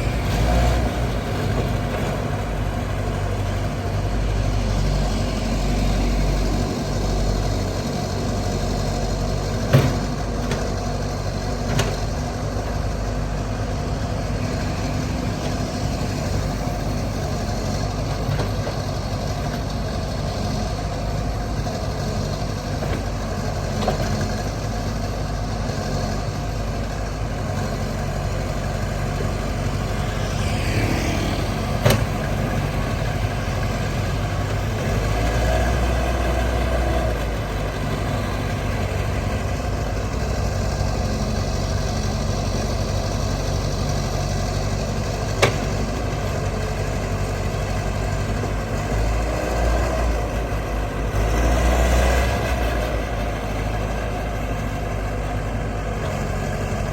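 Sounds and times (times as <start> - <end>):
diesel engine running: 0.0 - 56.9.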